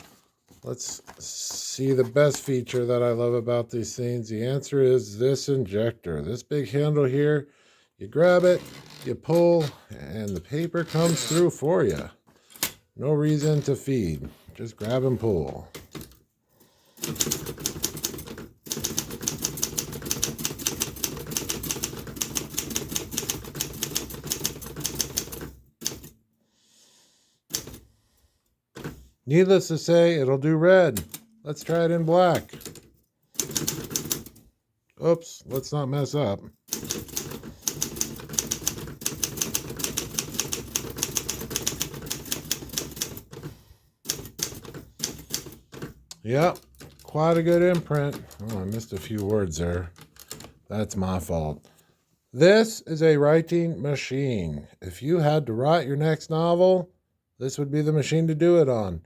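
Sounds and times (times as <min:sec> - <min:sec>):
manual typewriter typing: 0:14.8 - 0:16.2, 0:17.0 - 0:26.2, 0:27.5 - 0:27.9, 0:30.9 - 0:34.4, 0:36.6 - 0:50.6.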